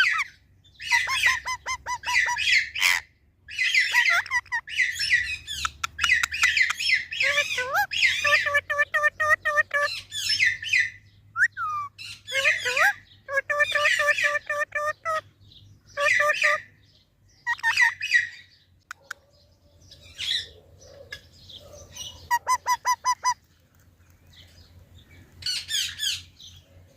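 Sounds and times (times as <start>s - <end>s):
parrot calling: 0.0s - 15.3s, 15.9s - 16.8s, 17.4s - 19.2s, 21.6s - 23.4s.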